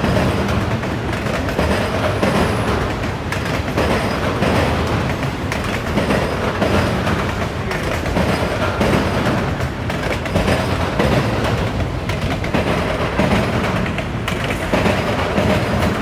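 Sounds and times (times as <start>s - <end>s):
train wheels rumbling on rail: 0.0s - 16.0s.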